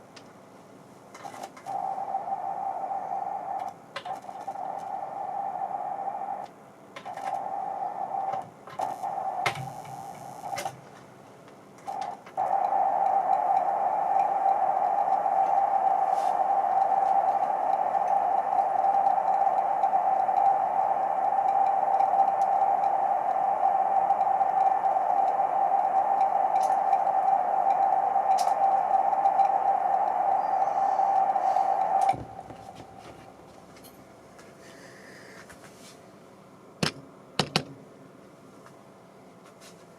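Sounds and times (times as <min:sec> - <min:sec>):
hissing electronic noise: 0:01.2 - 0:10.9, 0:11.8 - 0:35.5
clicks: 0:06.0 - 0:34.5.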